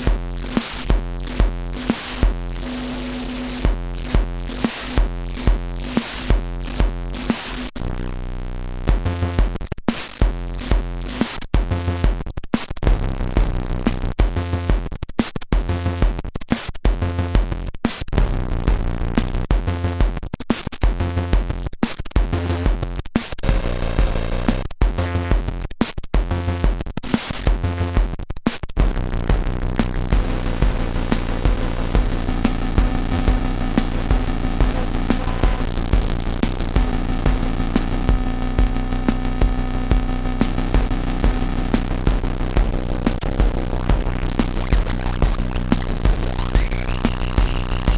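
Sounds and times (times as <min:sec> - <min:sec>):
deep kick drum thumps: 0:00.0 - 0:02.6, 0:03.6 - 0:07.0, 0:12.9 - 0:13.6, 0:28.8 - 0:47.9
synthesizer bass line: 0:00.0 - 0:09.6, 0:23.4 - 0:25.6, 0:28.8 - 0:47.9.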